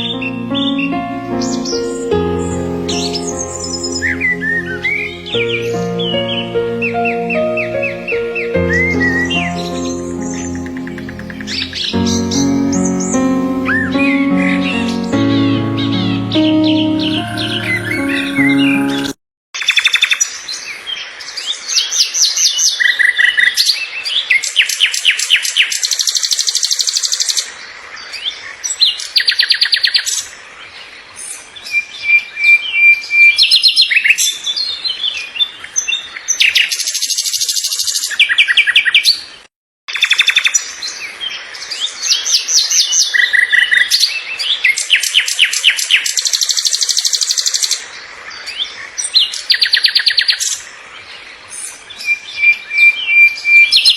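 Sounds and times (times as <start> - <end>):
birds chirping and trilling: 0.0 - 19.1.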